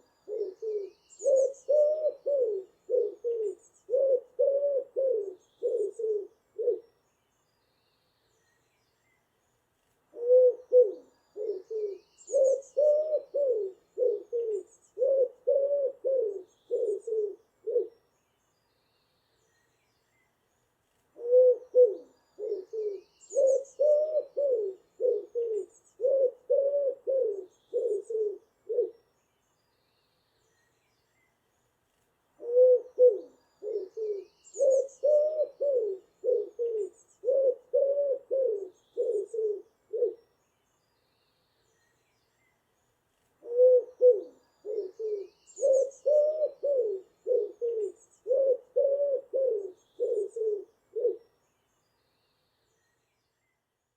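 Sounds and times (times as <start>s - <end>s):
pigeon cooing: 0.0s - 6.8s, 10.2s - 17.9s, 21.2s - 29.0s, 32.4s - 40.2s, 43.4s - 51.2s.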